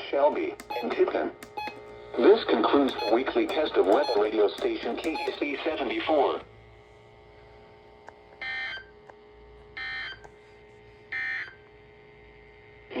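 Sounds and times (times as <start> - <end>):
faint steady hum: 0.0 - 13.0
short data bursts: 0.6 - 1.8.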